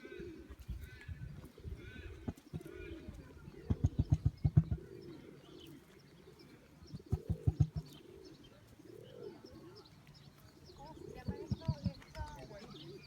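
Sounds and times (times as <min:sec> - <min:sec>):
emu deep thumping drum: 0:03.7 - 0:04.9, 0:07.0 - 0:08.0.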